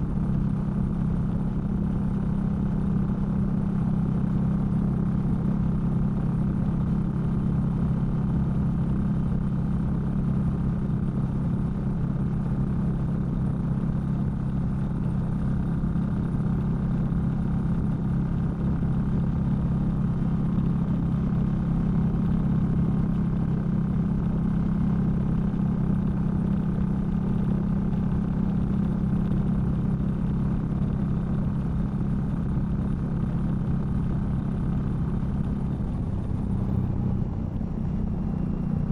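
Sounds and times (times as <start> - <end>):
muffled motorcycle engine running: 0.0 - 38.9.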